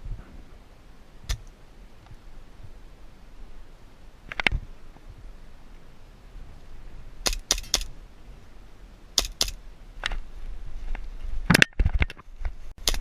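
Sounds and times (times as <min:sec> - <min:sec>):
airsoft gun shots snapping: 0:07.2 - 0:07.9, 0:09.2 - 0:09.6, 0:12.8 - 0:13.0.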